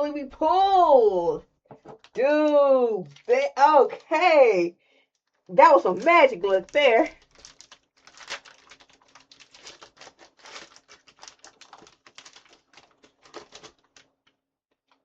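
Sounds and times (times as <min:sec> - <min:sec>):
foil wrapping rustling: 0:03.1 - 0:04.0, 0:05.3 - 0:14.2.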